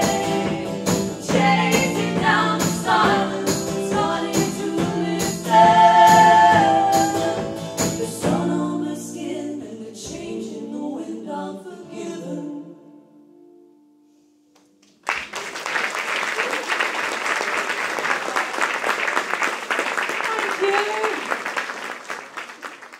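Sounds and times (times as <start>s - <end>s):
voices singing in harmony: 0.0s - 13.1s
audience applause: 14.8s - 22.9s.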